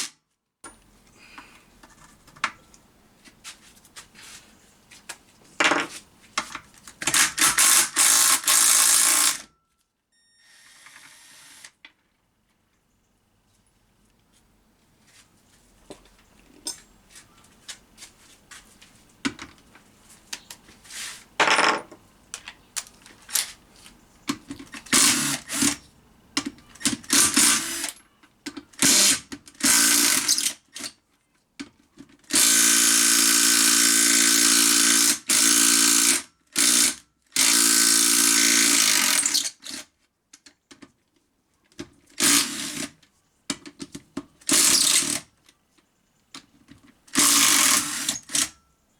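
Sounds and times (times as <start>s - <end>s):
power tool spinning bolts: 7.1s - 9.5s, 24.9s - 25.8s, 27.1s - 28.0s, 28.8s - 30.6s, 32.3s - 39.6s, 44.5s - 45.2s, 47.1s - 48.5s.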